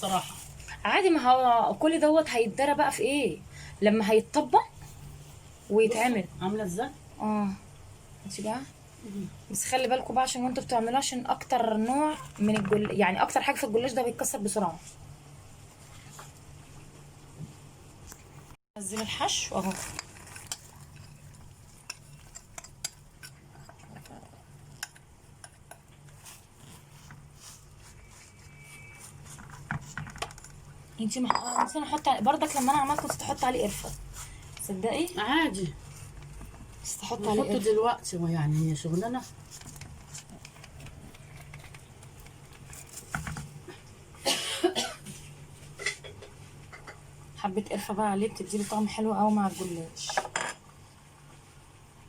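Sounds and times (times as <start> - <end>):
person coughing: 44.2 - 45.2.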